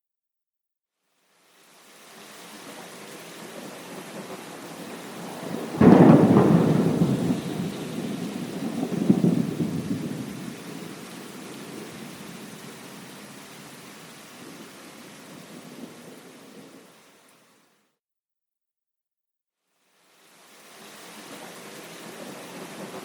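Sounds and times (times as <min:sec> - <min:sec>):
steady rain: 0:01.0 - 0:17.9, 0:19.7 - 0:23.0
thunderclap rolling into rumble: 0:05.0 - 0:12.4.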